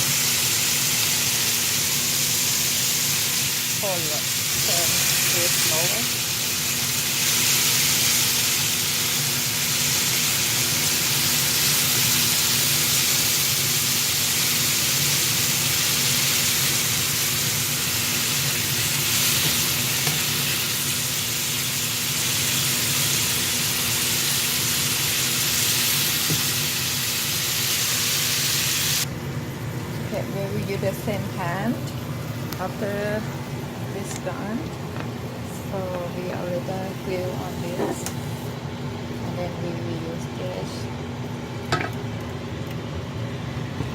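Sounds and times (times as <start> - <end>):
chicken sizzling in a frying pan: 0.0 - 30.8.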